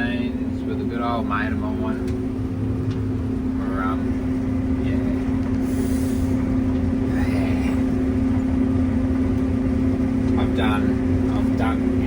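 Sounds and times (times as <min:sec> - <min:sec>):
combine harvester droning: 0:00.0 - 0:12.0.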